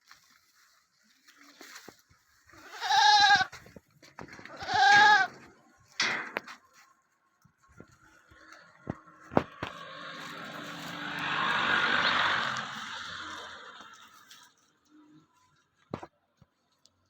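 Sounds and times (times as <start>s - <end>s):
goats bleating: 2.6s - 3.6s, 4.4s - 5.6s.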